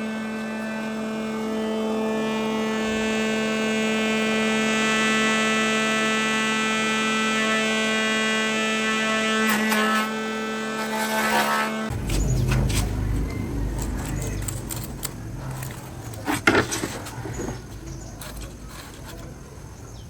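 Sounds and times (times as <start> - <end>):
power tool motor whining: 0.8 - 19.4
scraping or cutting noise: 8.8 - 19.6.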